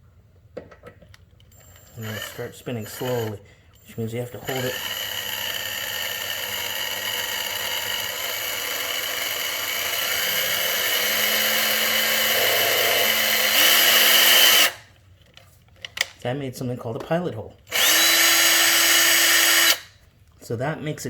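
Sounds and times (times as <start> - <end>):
power drill motor whining: 1.5 - 14.8, 17.7 - 20.0.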